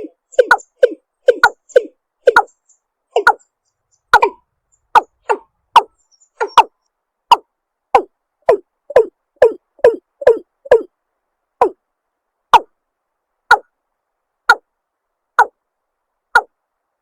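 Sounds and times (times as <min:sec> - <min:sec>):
watercock clucking calls: 0:00.0 - 0:02.5, 0:03.2 - 0:03.4, 0:04.1 - 0:04.4, 0:05.0 - 0:06.7, 0:08.0 - 0:10.9.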